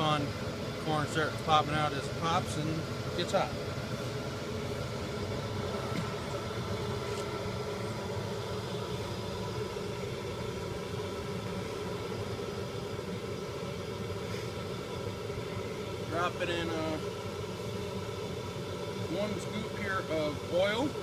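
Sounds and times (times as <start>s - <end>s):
mechanical drone with hum: 0.0s - 21.0s.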